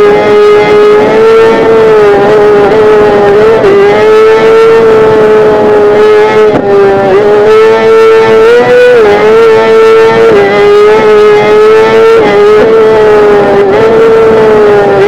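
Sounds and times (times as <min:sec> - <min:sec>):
motorcycle engine at high revs: 0:00.0 - 0:15.0.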